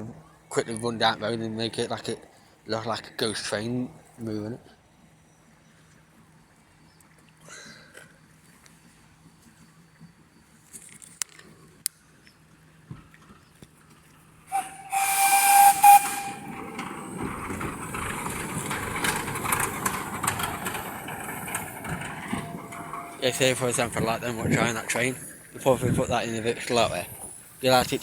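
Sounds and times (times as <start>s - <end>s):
hiss of escaping steam: 14.5s - 16.5s
steam locomotive whistle: 14.5s - 17.1s.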